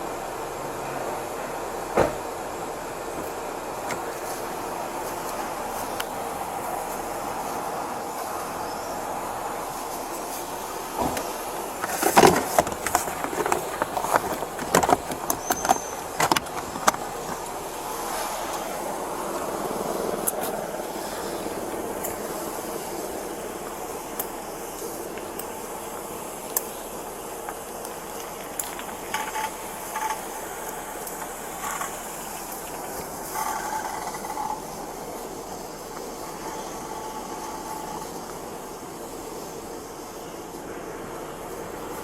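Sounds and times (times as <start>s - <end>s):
steady background rumble: 0.0s - 42.0s
steady hiss: 0.0s - 42.0s
irregular clicks and knocks: 11.0s - 17.6s
scraping or rustling: 11.0s - 17.6s.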